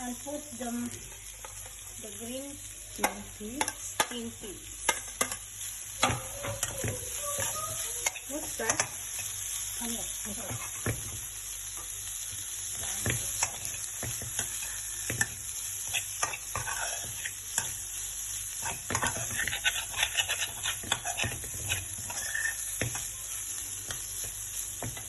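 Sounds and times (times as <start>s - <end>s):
vegetables sizzling in oil: 0.0s - 25.0s
spatula scraping a pan: 10.2s - 11.2s, 12.8s - 23.3s.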